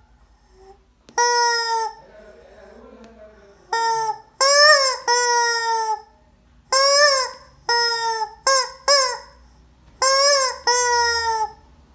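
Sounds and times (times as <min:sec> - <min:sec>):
rubber chicken toy squawking: 0:00.6 - 0:02.0, 0:03.7 - 0:06.1, 0:06.7 - 0:09.4, 0:10.0 - 0:11.7.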